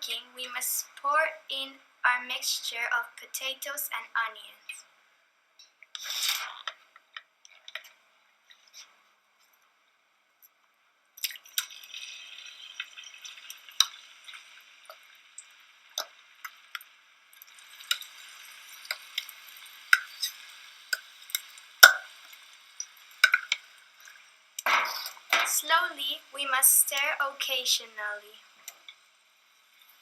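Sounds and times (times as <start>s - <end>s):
oil popping and crackling: 5.6s - 8.9s, 11.1s - 25.8s
food sizzling in a frying pan: 11.2s - 30.0s.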